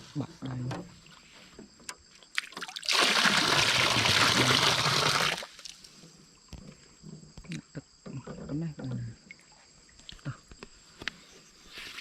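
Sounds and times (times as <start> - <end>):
water splashing: 2.3 - 5.8.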